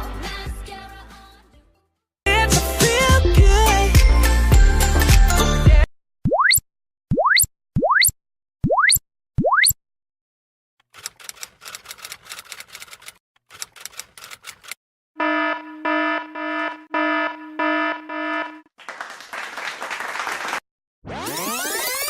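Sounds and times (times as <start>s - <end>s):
typewriter keys clacking: 10.8s - 14.8s
electronic alarm beeping: 15.2s - 18.7s
applause: 18.7s - 20.6s
tape rewinding squeal: 21.1s - 22.0s.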